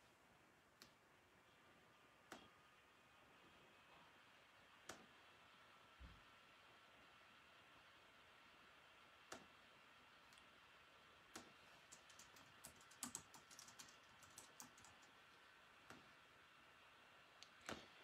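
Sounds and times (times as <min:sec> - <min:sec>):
faint keyboard typing: 0:09.2 - 0:09.6, 0:11.2 - 0:16.2.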